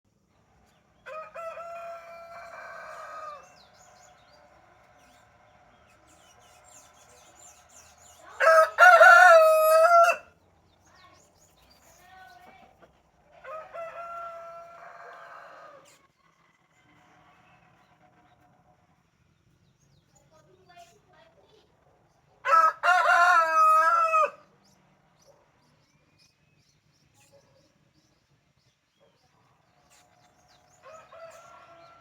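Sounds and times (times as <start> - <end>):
rooster crowing: 1.0 - 3.5, 8.4 - 10.3, 13.4 - 15.9, 22.4 - 24.4, 30.8 - 32.0.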